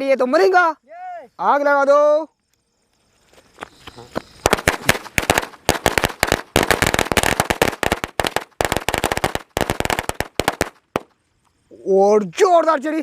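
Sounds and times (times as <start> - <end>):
firecrackers banging: 4.1 - 11.1.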